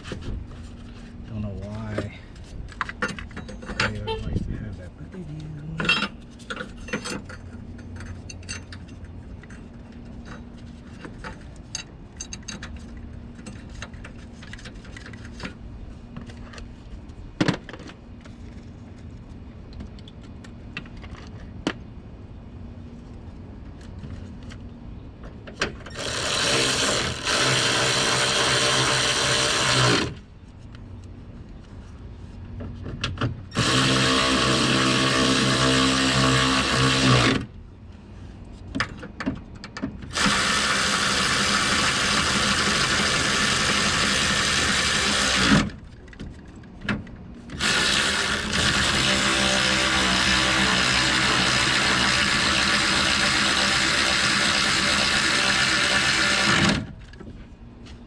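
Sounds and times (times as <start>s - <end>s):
cordless power tool running: 25.9s - 30.2s, 33.5s - 37.5s, 40.1s - 45.7s, 47.6s - 56.9s.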